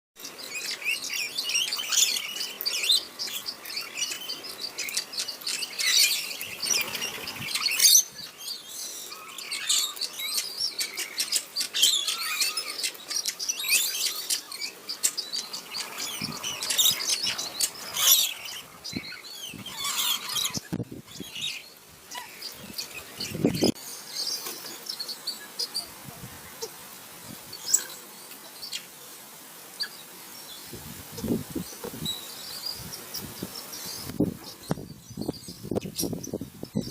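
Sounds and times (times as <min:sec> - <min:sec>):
parrots chirping and squawking: 0:09.1 - 0:14.7, 0:15.4 - 0:23.8.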